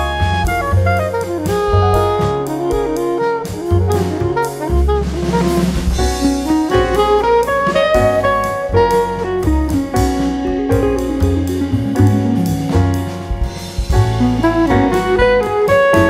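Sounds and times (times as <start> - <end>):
saxophone: 0.0 - 13.1, 13.9 - 16.0
drum kit beat: 0.0 - 16.0.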